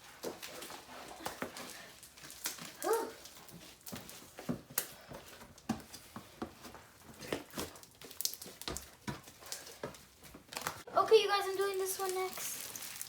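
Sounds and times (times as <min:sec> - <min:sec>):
slime squelching and popping: 0:07.3 - 0:09.8, 0:11.8 - 0:13.0.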